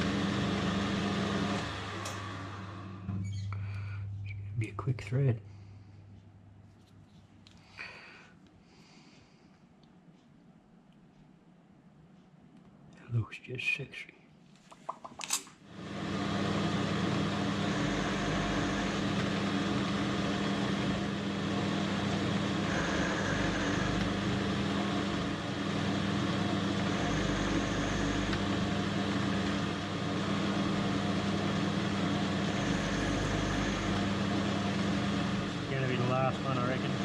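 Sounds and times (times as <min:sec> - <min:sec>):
metal lathe running: 0:00.0 - 0:03.1, 0:15.7 - 0:37.0.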